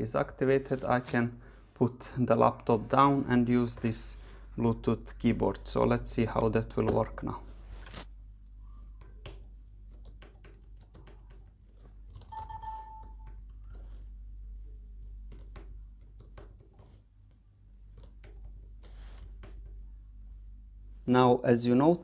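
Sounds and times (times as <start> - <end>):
keyboard keys tapping: 8.9 - 14.0, 15.2 - 17.0, 17.9 - 19.8
electronic beep: 12.3 - 13.3.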